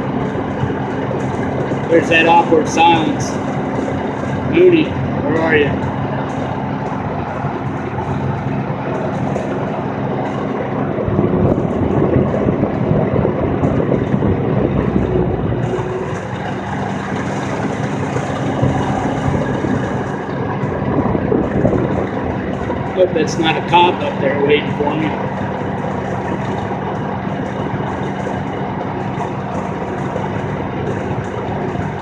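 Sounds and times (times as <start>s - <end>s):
road and wind noise: 0.0s - 32.0s
vehicle engine hum: 0.0s - 32.0s.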